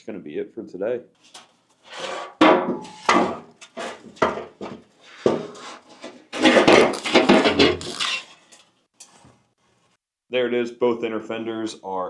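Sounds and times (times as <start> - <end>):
fender scraping and rubbing: 5.5 - 8.5.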